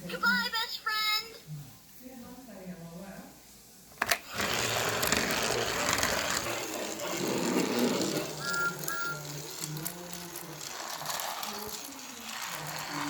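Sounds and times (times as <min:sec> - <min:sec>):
toy motor whirring: 0:04.0 - 0:13.0.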